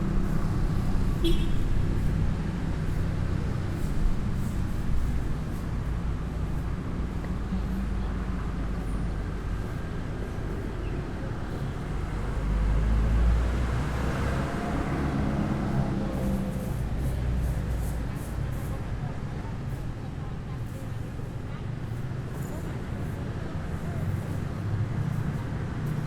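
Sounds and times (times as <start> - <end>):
traffic rumble: 0.0 - 26.0.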